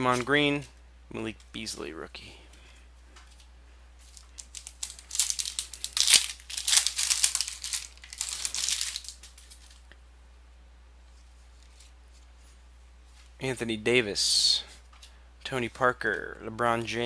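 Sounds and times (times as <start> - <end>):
wrapper torn open and crinkled: 4.2 - 9.8.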